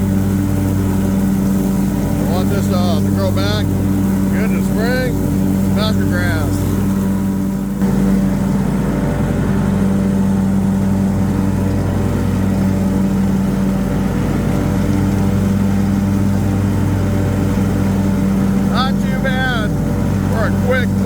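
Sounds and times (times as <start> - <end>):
lawn mower engine running: 0.0 - 21.0.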